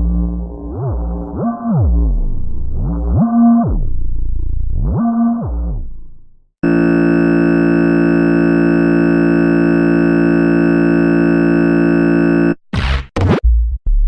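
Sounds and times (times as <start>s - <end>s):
held electronic chord: 6.6s - 12.6s.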